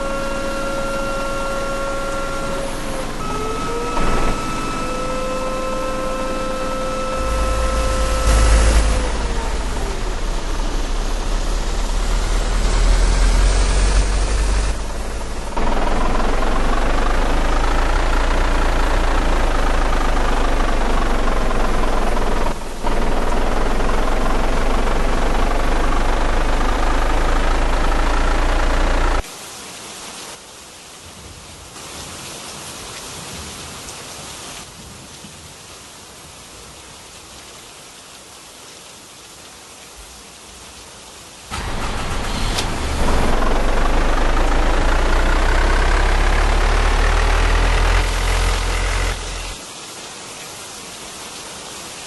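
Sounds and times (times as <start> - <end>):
deep rumble: 0.0 - 29.2
wavering whine: 0.0 - 29.2
rain-like hiss: 29.2 - 43.2, 44.2 - 52.0.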